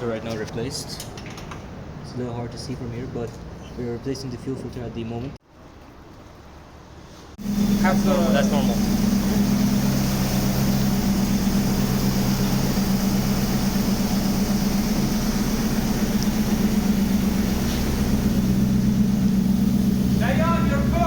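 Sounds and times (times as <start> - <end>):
car engine idling: 7.4 - 21.0.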